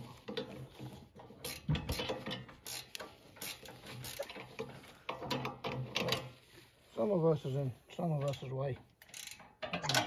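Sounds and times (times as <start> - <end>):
ratchet wrench clicking: 1.4 - 4.6, 9.0 - 10.0.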